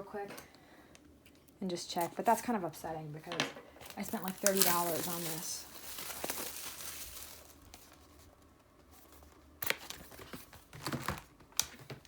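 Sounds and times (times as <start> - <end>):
packaging crackling and tearing: 3.8 - 8.2.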